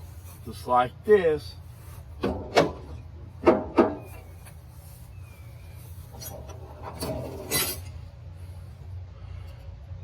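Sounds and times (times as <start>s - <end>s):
metal clunk: 2.2s - 4.2s.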